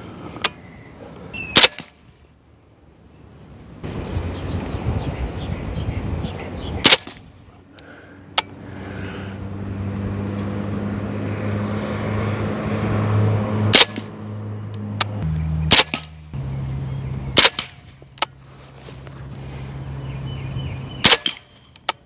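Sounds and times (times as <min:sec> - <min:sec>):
low drone: 0:07.9 - 0:20.9.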